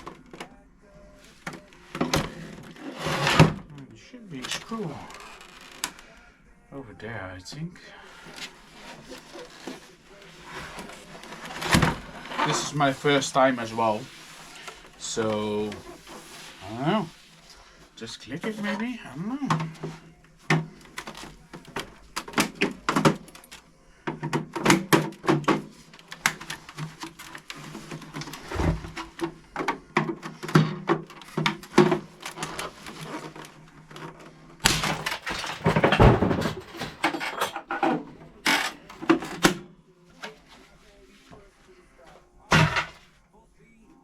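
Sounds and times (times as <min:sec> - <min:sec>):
plastic cracking: 0:00.0 - 0:00.6, 0:04.4 - 0:06.3, 0:08.1 - 0:17.1, 0:19.5 - 0:40.6.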